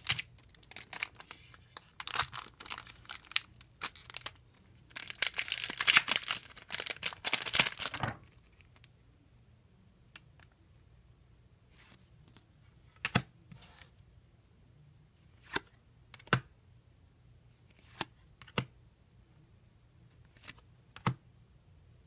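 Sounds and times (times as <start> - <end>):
cards sliding: 17.7 - 18.7.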